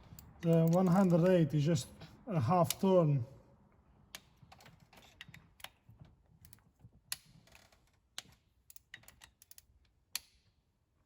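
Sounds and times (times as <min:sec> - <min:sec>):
wrench clicking on bolts: 0:00.0 - 0:01.3, 0:06.4 - 0:10.6.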